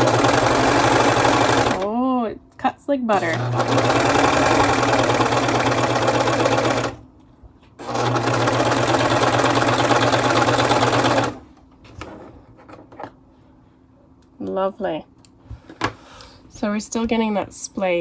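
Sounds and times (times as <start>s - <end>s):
serger sewing machine running: 0.0s - 1.9s, 3.1s - 7.0s, 7.8s - 11.4s.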